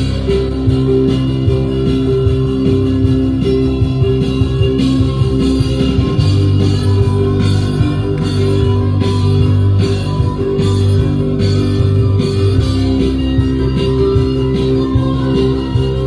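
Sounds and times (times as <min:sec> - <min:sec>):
electric guitar: 0:00.0 - 0:16.0
rock band playing: 0:00.0 - 0:16.0.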